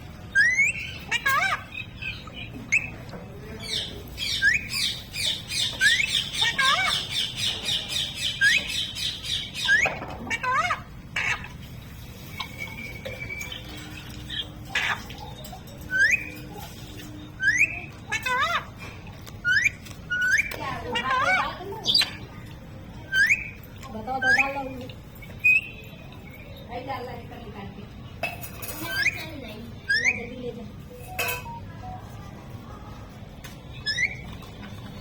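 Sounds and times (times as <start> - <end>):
parrot squawking: 0.3 - 3.0, 3.6 - 11.8, 12.5 - 18.8, 19.4 - 22.4, 23.0 - 24.7, 28.8 - 30.4, 33.8 - 34.4.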